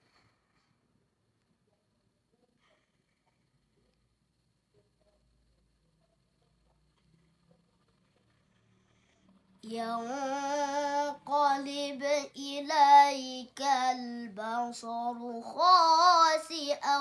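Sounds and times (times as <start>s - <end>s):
child chanting recitation: 9.6s - 17.0s.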